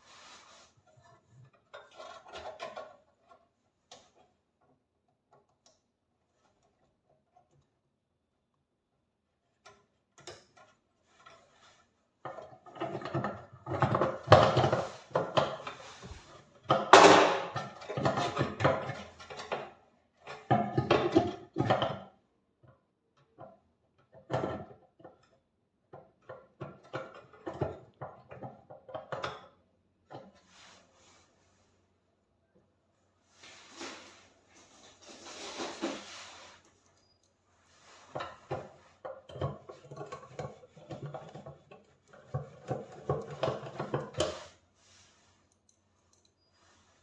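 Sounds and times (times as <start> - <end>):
tools and parts clattering: 12.2 - 19.7, 33.4 - 44.6.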